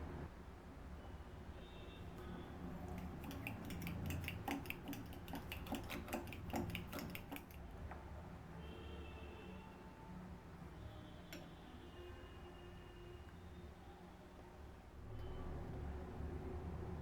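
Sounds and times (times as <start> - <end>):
utensil clinking against dishes: 2.9 - 7.6.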